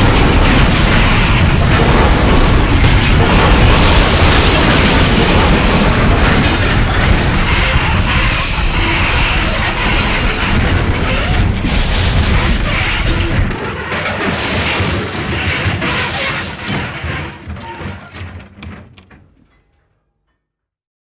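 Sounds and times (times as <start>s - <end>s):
loud train rumble: 0.0s - 13.8s
crashing burst: 0.0s - 17.4s
metallic wheel squealing: 2.6s - 11.5s.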